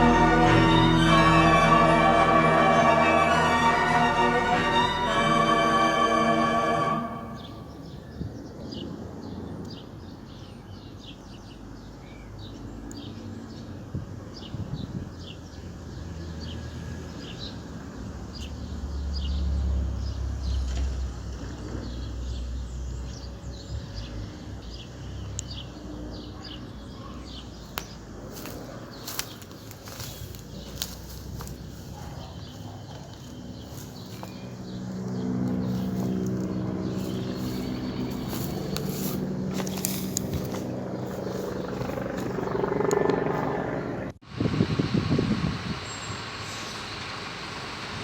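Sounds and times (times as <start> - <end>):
small birds chirping: 24.6 - 43.0
low outdoor rumble: 28.2 - 46.4.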